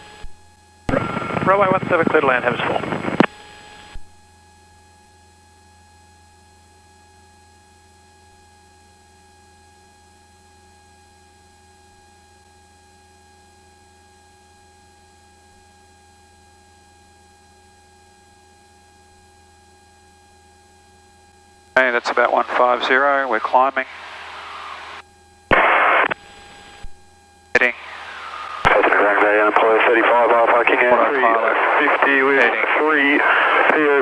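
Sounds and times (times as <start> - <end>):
faint electrical hum: 21.8 - 34.0.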